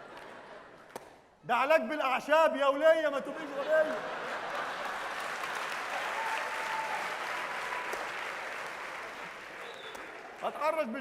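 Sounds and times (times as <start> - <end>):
audience laughing: 3.3 - 5.7
audience applauding: 3.9 - 11.0.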